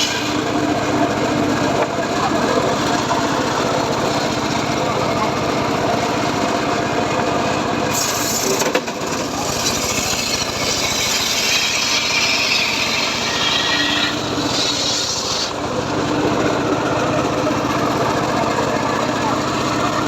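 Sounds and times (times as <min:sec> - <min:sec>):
circular saw blade cutting wood: 0:00.0 - 0:00.8, 0:07.9 - 0:16.2
engine running steadily: 0:00.0 - 0:20.0.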